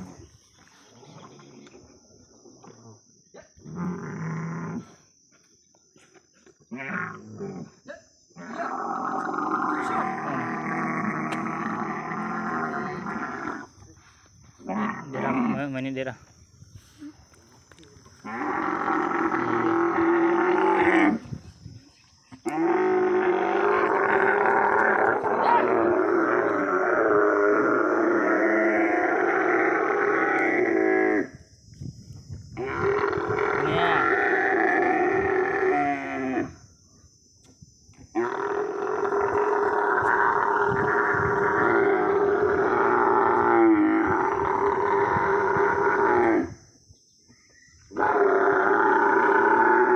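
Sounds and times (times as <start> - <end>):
camel calling: 8.5 - 13.8, 14.5 - 15.7, 18.1 - 31.4, 32.6 - 36.6, 38.1 - 46.6.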